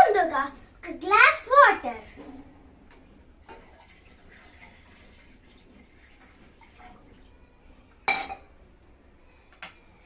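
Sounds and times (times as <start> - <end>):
sharp clink with ring: 8.1 - 8.5.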